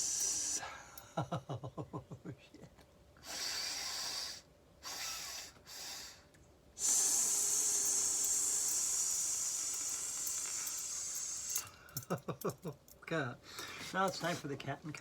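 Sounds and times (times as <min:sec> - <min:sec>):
woman hissing through teeth: 0:03.2 - 0:06.1, 0:06.8 - 0:11.7.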